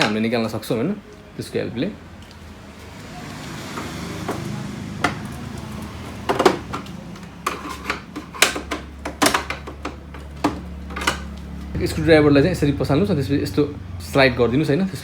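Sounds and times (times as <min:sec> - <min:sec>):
sharp plastic clicks and knocks: 0:05.0 - 0:11.5.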